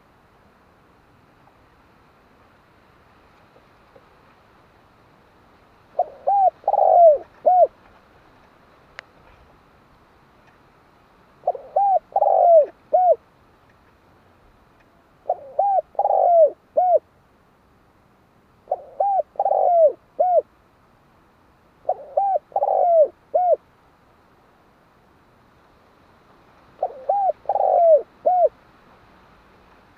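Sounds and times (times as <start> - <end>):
dove cooing: 5.9 - 7.8, 11.4 - 13.2, 15.2 - 17.1, 18.7 - 20.5, 21.8 - 23.6, 26.8 - 28.6.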